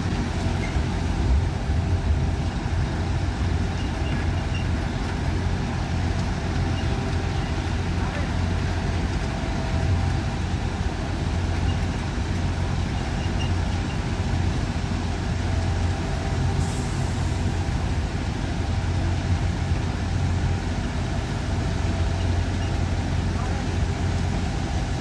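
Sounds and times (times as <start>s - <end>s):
diesel construction machinery running: 0.0s - 25.0s
brief hiss: 16.6s - 17.6s.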